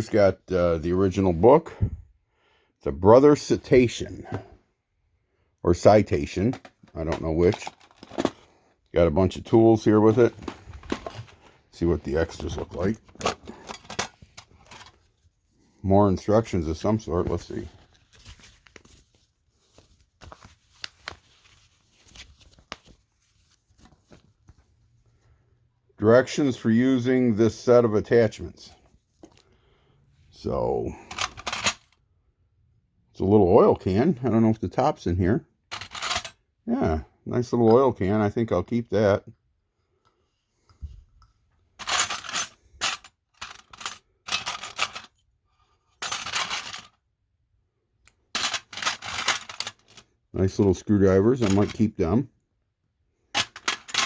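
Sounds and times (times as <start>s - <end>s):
paper rustling and tapping: 19.7s - 24.7s
small metal tools clinking: 35.7s - 36.4s, 41.8s - 45.2s, 46.0s - 46.9s, 53.4s - 54.0s.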